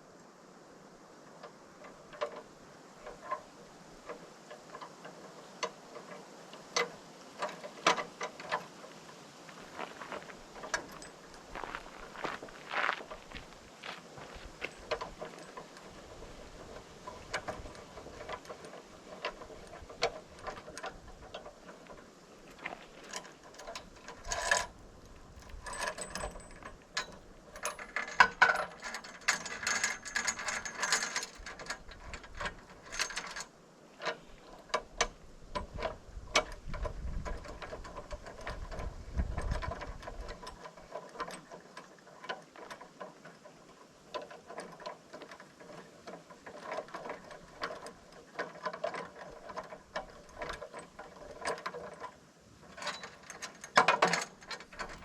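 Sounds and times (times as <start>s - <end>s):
hand tools clattering on metal: 23.0s - 31.8s.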